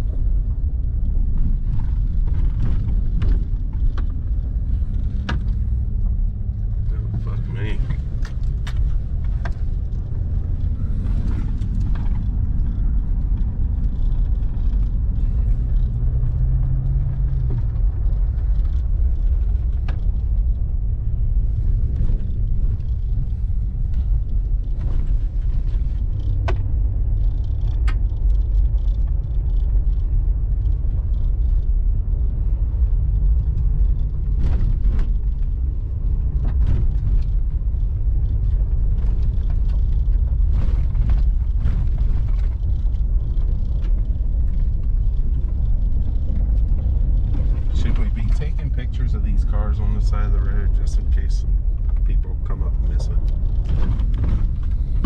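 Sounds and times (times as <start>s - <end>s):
engine and tyres rumbling: 0.0s - 55.0s.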